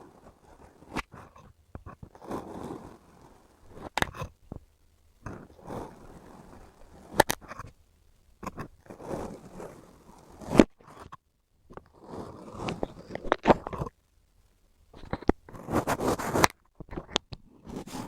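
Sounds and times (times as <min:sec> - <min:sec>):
sand being cut crunchy scraping: 0:02.2 - 0:03.3, 0:12.0 - 0:12.7.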